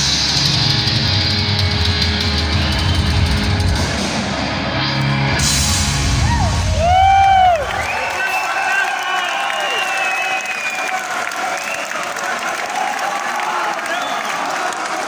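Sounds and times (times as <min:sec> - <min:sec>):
heavy metal band playing live: 0:00.0 - 0:07.5.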